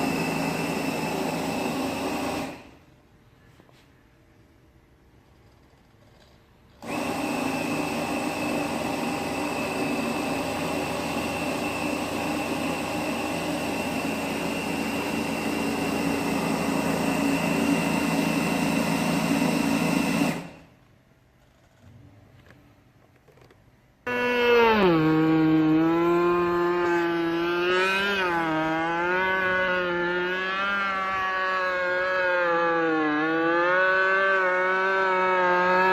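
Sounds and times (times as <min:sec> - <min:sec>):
electric drive running: 0:00.0 - 0:02.9, 0:06.8 - 0:20.8, 0:24.1 - 0:35.9
high steady whine: 0:06.8 - 0:20.9.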